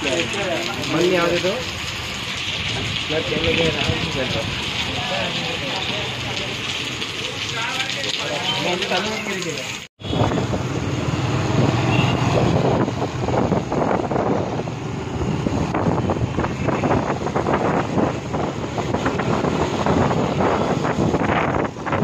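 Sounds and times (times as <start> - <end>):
vehicle rumble: 10.0 - 22.0
wind buffeting microphone: 10.2 - 22.0.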